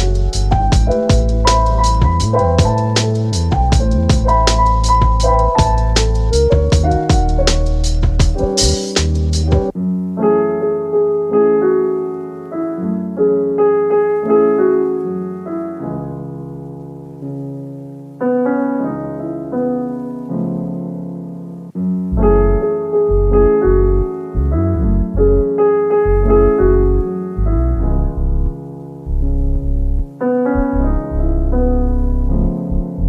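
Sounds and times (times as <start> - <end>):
deep pulsing bass line: 0.0 - 9.7, 22.1 - 25.5, 26.1 - 33.0
slow piano chords: 0.0 - 33.0.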